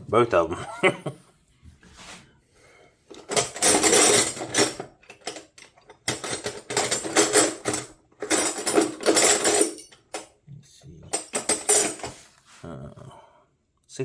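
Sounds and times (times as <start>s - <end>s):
metal wrenches scraping and clicking: 3.1s - 10.3s, 11.1s - 12.2s.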